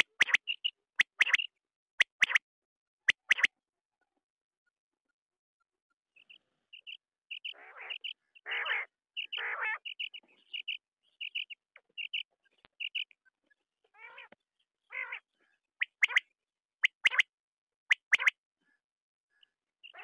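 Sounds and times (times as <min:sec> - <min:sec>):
quail whistled calls: 0:00.0 - 0:02.4, 0:03.1 - 0:03.5, 0:15.8 - 0:17.3, 0:17.9 - 0:18.4
quail rasping calls: 0:07.3 - 0:11.4.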